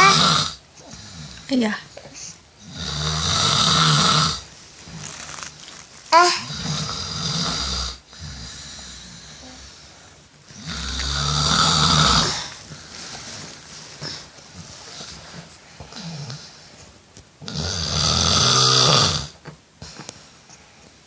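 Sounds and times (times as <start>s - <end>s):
person snoring: 0.0s - 1.4s, 2.6s - 5.2s, 6.2s - 9.7s, 10.5s - 12.6s, 17.5s - 19.4s.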